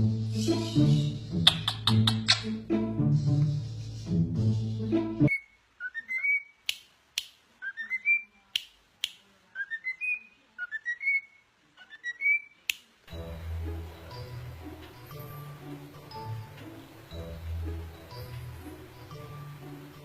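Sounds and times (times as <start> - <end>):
music: 0.0 - 5.3, 13.1 - 20.0
bird chirping: 5.3 - 6.7, 7.6 - 8.5, 9.5 - 12.7.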